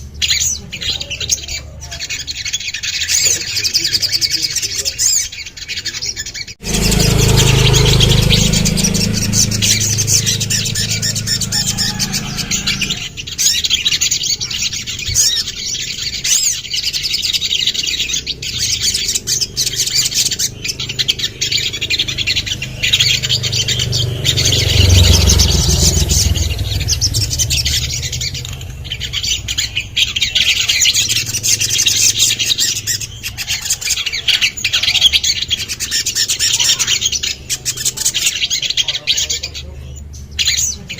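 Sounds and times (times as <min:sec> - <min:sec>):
bird chirping and trilling: 0:00.0 - 0:40.9
low rumble: 0:06.6 - 0:13.3, 0:18.9 - 0:32.3.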